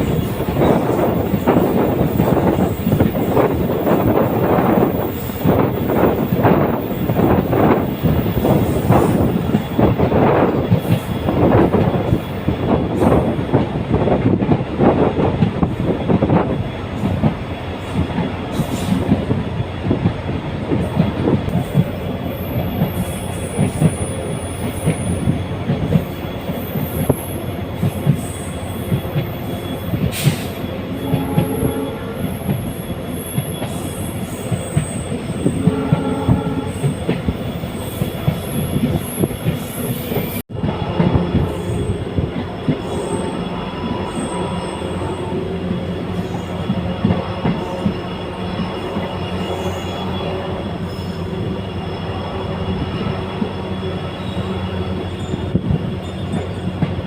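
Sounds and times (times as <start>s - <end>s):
train wheels rumbling on rail: 0.0s - 57.0s.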